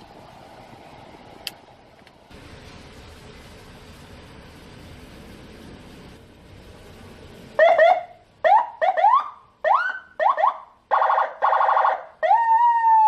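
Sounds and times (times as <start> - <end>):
electronic vehicle siren: 7.6 - 13.0.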